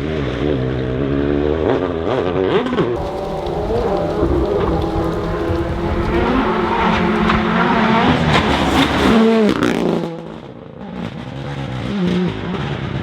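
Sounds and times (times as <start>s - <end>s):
rally car engine revving: 3.0s - 9.5s.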